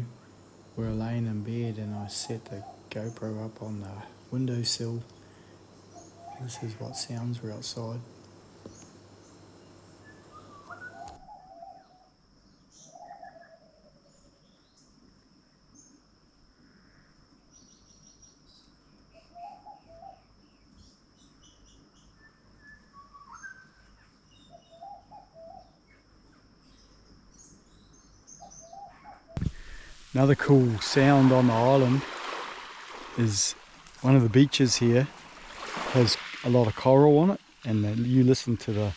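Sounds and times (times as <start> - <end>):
low warbling bird calls: 0.0 - 12.1, 19.2 - 20.3, 22.0 - 25.9, 28.0 - 38.9
high bird chirps: 2.2 - 11.2.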